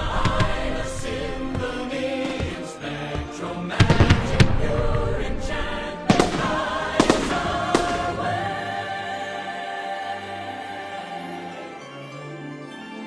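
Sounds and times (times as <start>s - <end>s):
music with choir singing: 0.0s - 13.0s
firework bangs: 3.8s - 8.5s.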